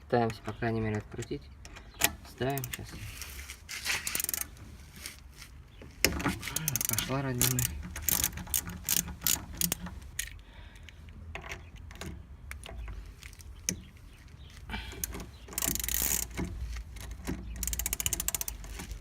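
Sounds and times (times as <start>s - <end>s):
metallic clicks: 6.0s - 14.3s, 14.9s - 19.0s
ratchet wrench clicking: 6.5s - 10.4s, 15.5s - 19.0s.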